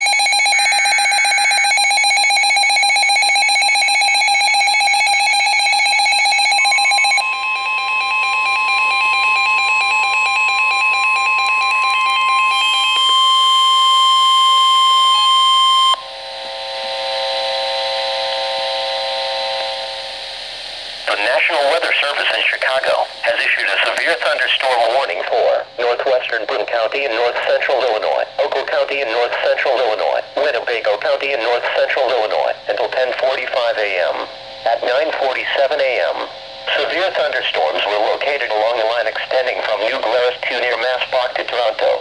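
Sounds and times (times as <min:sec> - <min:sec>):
steady high alert tone: 0:00.0 - 0:16.0
pulsing electronic alarm tone: 0:00.0 - 0:16.1.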